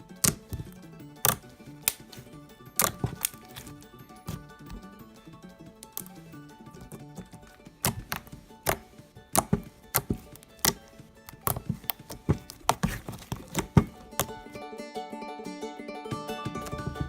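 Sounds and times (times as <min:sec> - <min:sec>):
soft background music: 0:00.0 - 0:17.0
slime clicking and popping: 0:00.2 - 0:02.2, 0:02.8 - 0:04.8, 0:05.8 - 0:06.2, 0:07.3 - 0:14.5.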